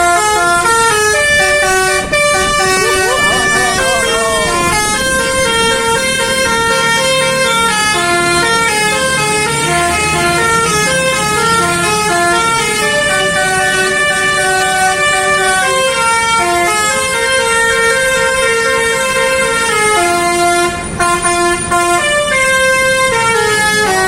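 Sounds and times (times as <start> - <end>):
low engine rumble: 0.0 - 15.4
multi-tone bus horn melody: 0.0 - 24.0.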